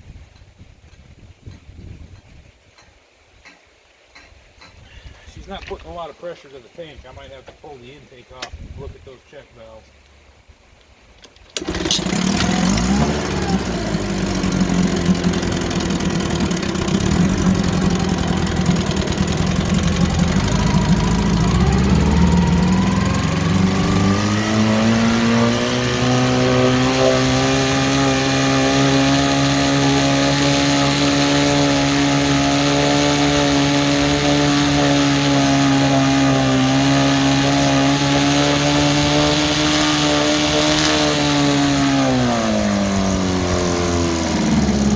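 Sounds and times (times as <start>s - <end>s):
outboard motor running: 11.6s - 44.9s.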